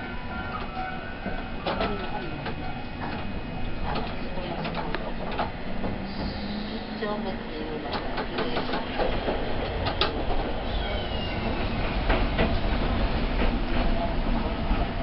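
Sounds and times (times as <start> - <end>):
streetcar wheels and motors rumbling: 0.0 - 15.0
faint high squeal: 10.7 - 11.7.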